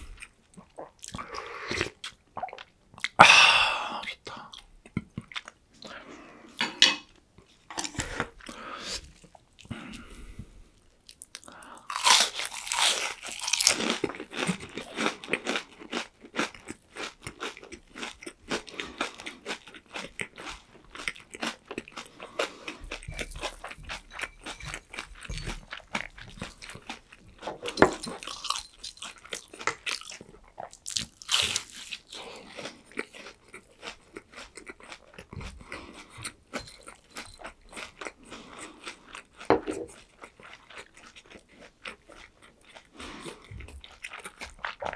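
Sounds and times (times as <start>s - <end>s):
crunching crispy fried food: 11.2s - 23.7s, 28.2s - 35.1s.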